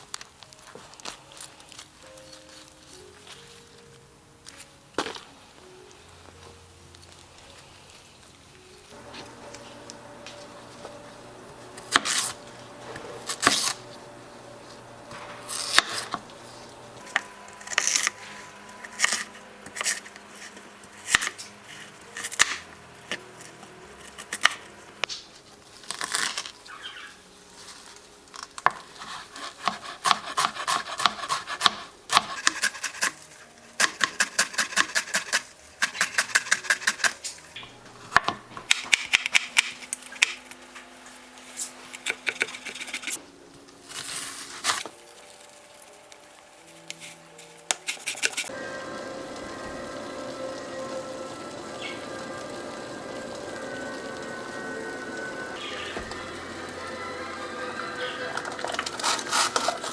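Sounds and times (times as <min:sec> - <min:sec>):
knife chopping on wooden board: 0:29.5 - 0:33.1.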